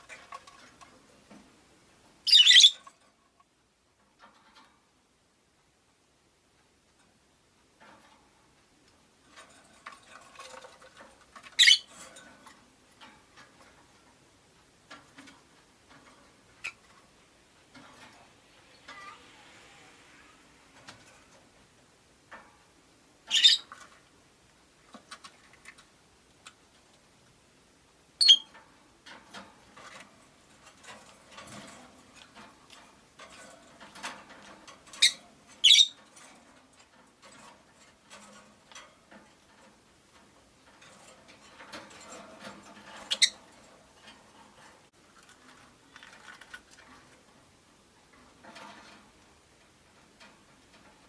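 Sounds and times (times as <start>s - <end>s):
soft clicking and scratching: 0.0s - 1.6s, 7.8s - 22.8s, 23.6s - 27.4s, 28.4s - 51.0s
lovebirds shrill calls: 2.3s - 2.8s, 11.6s - 11.9s, 23.3s - 23.7s, 28.2s - 28.5s, 35.0s - 36.0s.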